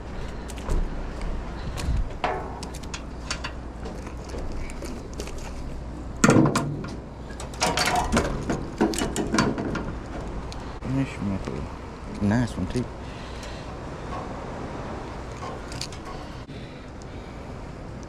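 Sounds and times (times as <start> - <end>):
fishing gear knocks and clicks: 15.3 - 16.3.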